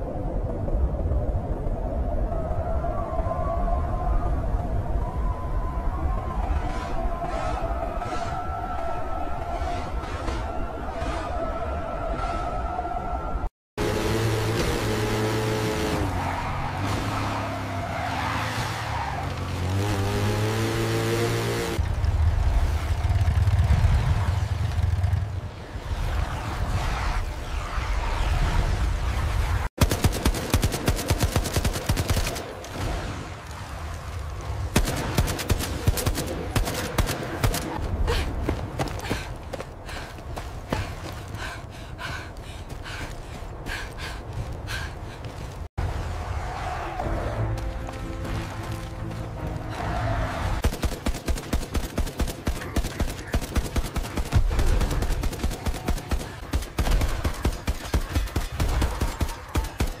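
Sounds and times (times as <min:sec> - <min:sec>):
rapid automatic gunfire: 0:29.8 - 0:32.6, 0:34.8 - 0:37.8, 0:50.6 - 1:00.0.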